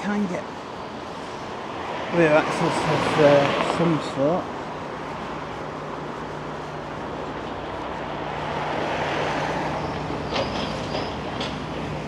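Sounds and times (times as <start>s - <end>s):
vehicle passing: 5.2s - 12.0s.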